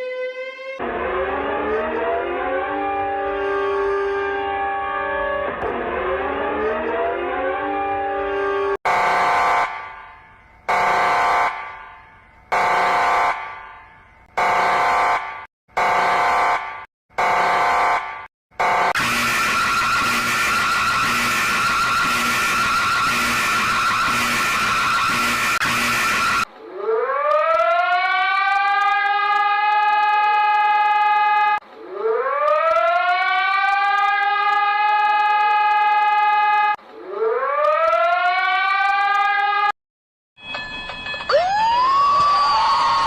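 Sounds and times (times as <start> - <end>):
siren rising in pitch: 0.0 - 10.0, 18.6 - 39.8, 41.3 - 43.0
harsh steady alarm tone: 0.8 - 39.8.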